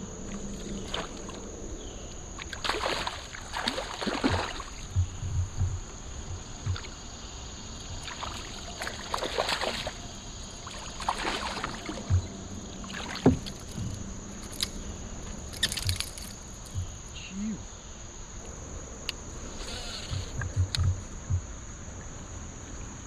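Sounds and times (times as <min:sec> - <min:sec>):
water splashing: 0:00.2 - 0:17.0
knocks against kayak hull: 0:13.2 - 0:14.0.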